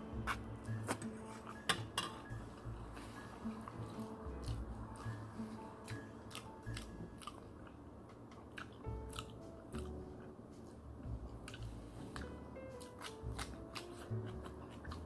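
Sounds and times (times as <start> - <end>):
person chewing crunchy food: 2.3 - 7.8, 8.5 - 10.3, 11.4 - 15.0.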